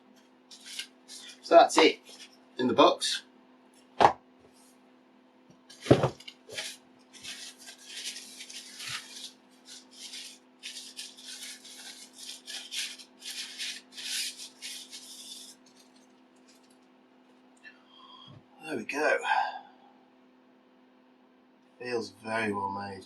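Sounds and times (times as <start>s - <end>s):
faint steady hum: 0.0s - 23.0s
wrapping rustling: 0.1s - 2.6s, 5.6s - 17.4s.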